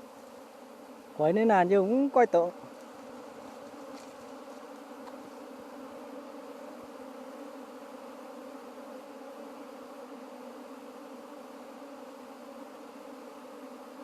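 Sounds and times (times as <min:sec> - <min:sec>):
swarm of bees buzzing: 0:00.0 - 0:14.0.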